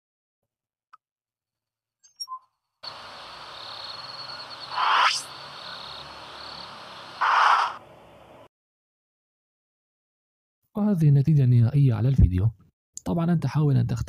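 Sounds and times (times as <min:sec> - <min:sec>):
steady hiss with high tone: 0:02.8 - 0:08.5.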